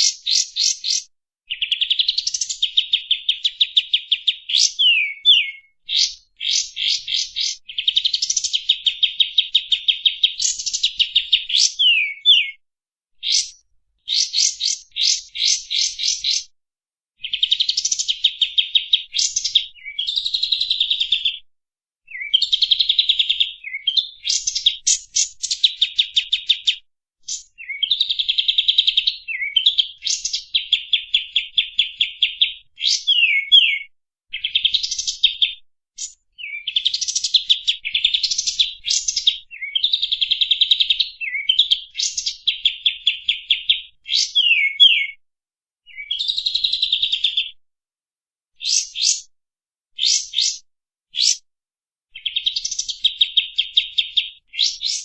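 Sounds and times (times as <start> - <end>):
songbird singing rapid high notes: 4.4 - 8.8, 10.4 - 12.6, 32.8 - 33.8, 44.1 - 45.1.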